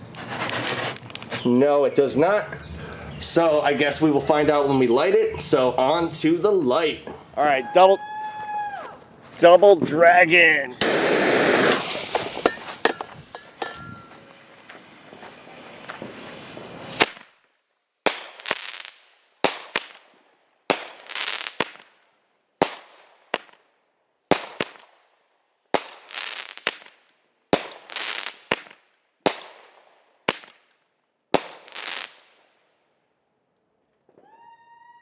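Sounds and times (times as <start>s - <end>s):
firework bang and crackle: 0.0s - 1.5s, 10.8s - 17.4s, 18.0s - 22.0s, 22.6s - 23.6s, 24.3s - 25.0s, 25.7s - 30.7s, 31.3s - 32.5s
firework launch reports: 9.4s - 17.2s
fuse hissing: 10.8s - 17.1s.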